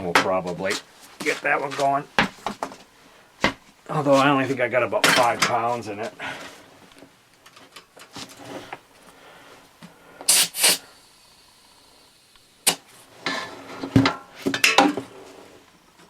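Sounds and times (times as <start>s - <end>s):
air hissing into tire: 9.4s - 13.6s.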